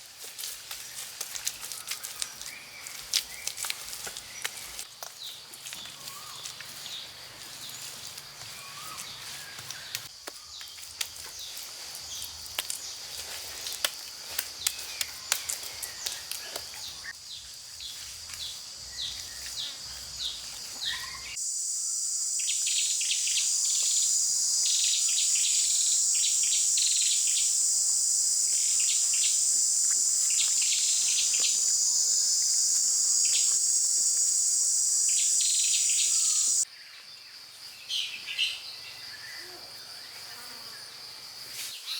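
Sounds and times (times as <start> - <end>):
high insect trill: 0.4 - 36.7
bird chirps: 17.9 - 36.6
loud high insect drone: 21.1 - 36.6.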